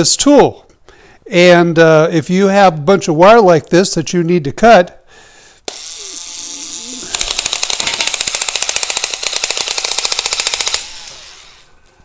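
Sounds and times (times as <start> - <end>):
multi-cutter motor running: 5.7 - 11.8.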